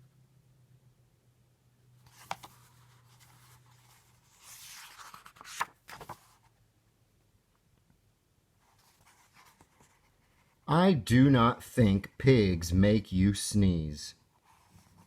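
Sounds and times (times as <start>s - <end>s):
faint low hum: 0.0s - 15.0s
book pages rustling: 2.0s - 6.6s, 8.6s - 10.5s.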